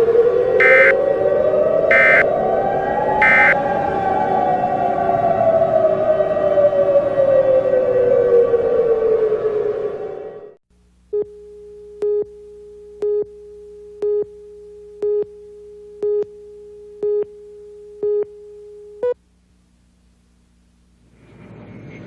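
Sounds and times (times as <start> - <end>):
louder beeps: 0.6 - 1.0, 1.9 - 2.2, 3.2 - 3.6
steady electronic tone: 0.6 - 1.0, 1.9 - 2.2, 3.2 - 3.6.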